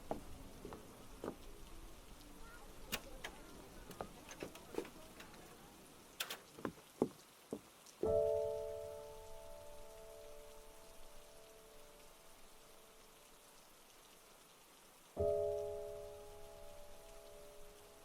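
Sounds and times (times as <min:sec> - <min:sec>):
faint hiss: 0:00.0 - 0:18.0
light clicks and taps: 0:02.9 - 0:05.6.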